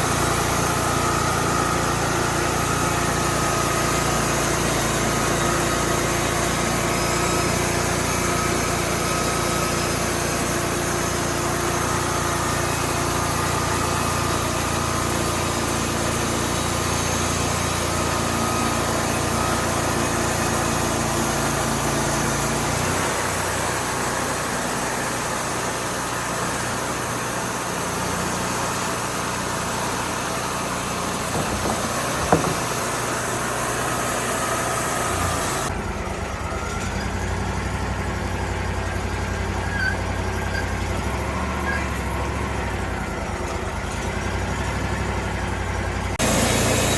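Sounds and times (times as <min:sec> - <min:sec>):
sawmill engine running: 0:00.0 - 0:46.9
sharp knock: 0:31.3 - 0:32.9.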